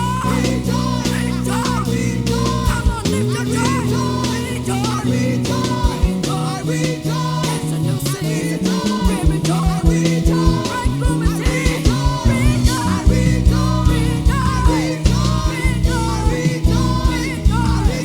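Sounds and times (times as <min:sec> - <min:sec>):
bass line: 0:00.0 - 0:18.0
person singing: 0:00.0 - 0:18.0
worship band playing: 0:00.0 - 0:18.0
drum hits: 0:09.0 - 0:18.0.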